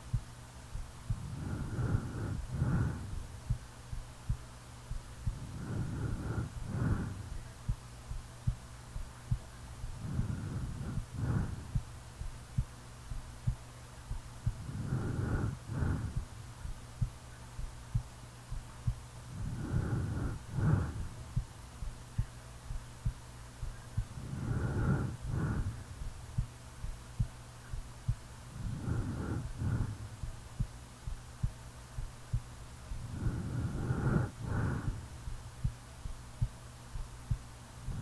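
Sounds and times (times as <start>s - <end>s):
heartbeat thumping: 0.0s - 38.0s
heavy snoring breaths: 1.1s - 3.6s, 5.2s - 7.5s, 9.8s - 12.0s, 14.4s - 16.6s, 19.3s - 21.5s, 24.0s - 26.5s, 28.5s - 30.7s, 32.9s - 35.8s.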